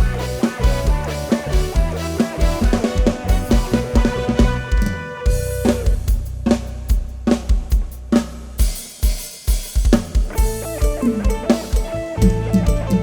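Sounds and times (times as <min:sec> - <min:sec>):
instrumental melody: 0:00.0 - 0:06.0, 0:10.4 - 0:13.0
bass line: 0:00.0 - 0:08.2, 0:10.3 - 0:13.0
drum kit beat: 0:00.0 - 0:13.0.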